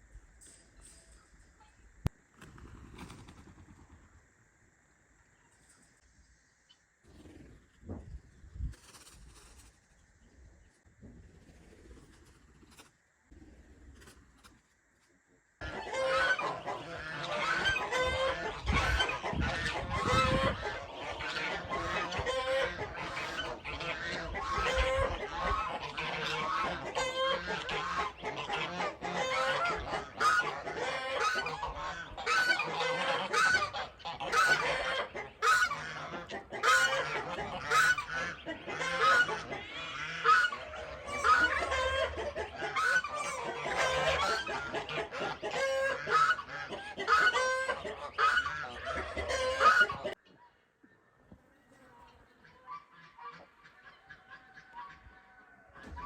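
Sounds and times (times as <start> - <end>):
geese honking: 15.6 - 50.2, 52.1 - 56.0.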